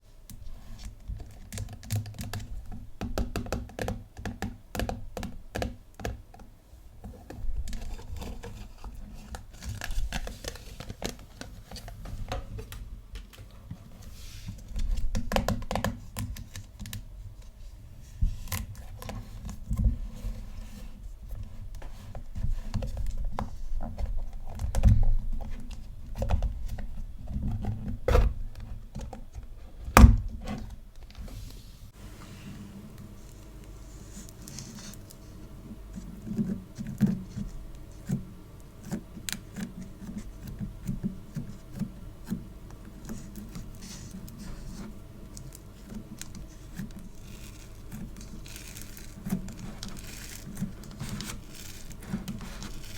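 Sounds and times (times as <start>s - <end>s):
sticky clay squishing and crackling: 33.2s - 52.9s.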